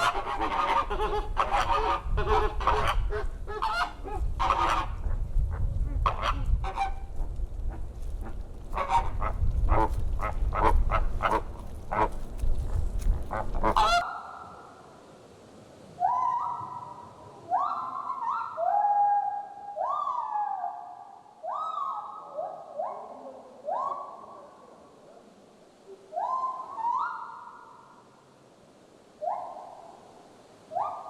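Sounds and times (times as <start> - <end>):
flamingos honking: 0.0 - 5.3, 6.0 - 12.4, 13.2 - 14.4
gibbon hooting whoops: 16.0 - 16.9, 17.5 - 20.8.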